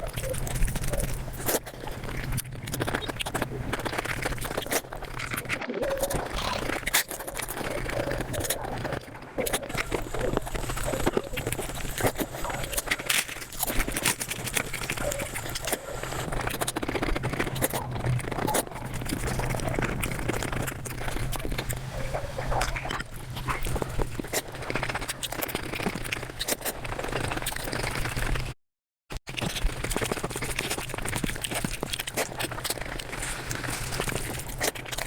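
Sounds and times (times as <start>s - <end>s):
steady low hum: 0.0s - 25.2s
sped-up chewing and smacking: 0.0s - 28.6s, 29.2s - 35.0s.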